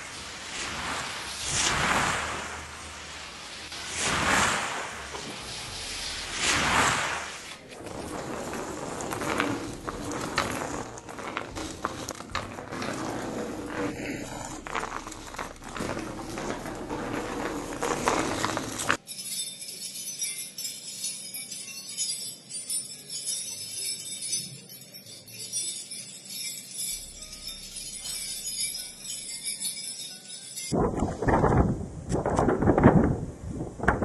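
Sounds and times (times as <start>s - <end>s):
dense rustling and crackling: 0.0s - 19.0s
high thin jingling: 7.9s - 30.8s.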